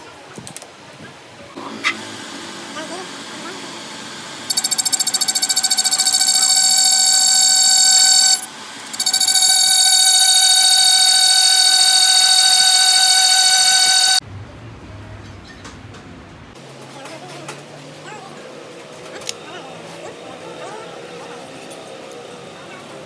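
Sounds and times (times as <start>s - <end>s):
buzzer alarm tone: 4.5s - 14.2s.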